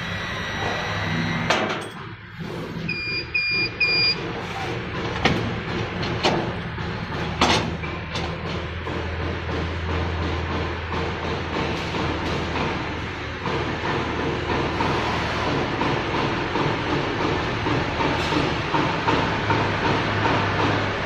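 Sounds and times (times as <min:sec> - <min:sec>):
laser cutter humming: 0:00.0 - 0:01.5
short electronic beeps: 0:02.9 - 0:04.2.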